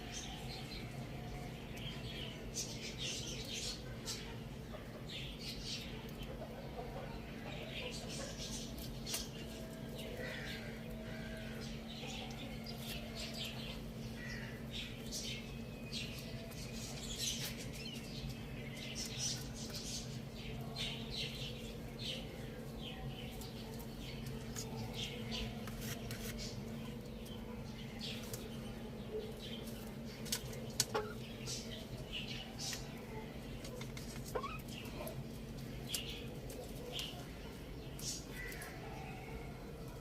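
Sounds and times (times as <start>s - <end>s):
birds chirping: 0.0s - 40.0s
steady low hum: 0.0s - 40.0s.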